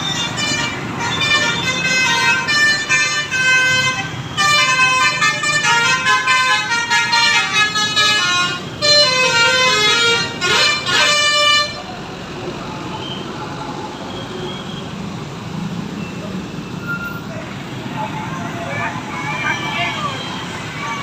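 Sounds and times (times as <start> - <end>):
bus horn playing tune: 0.0 - 11.9.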